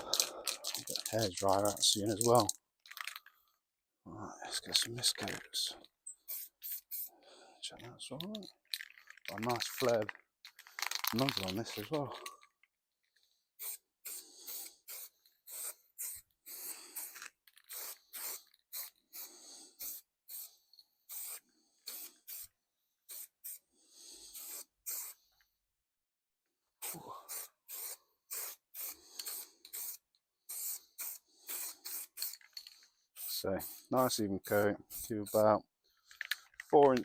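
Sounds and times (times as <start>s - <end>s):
aerosol can spraying hiss: 6.2s - 7.1s, 13.6s - 22.5s, 23.1s - 25.2s, 26.8s - 32.4s, 33.2s - 34.2s.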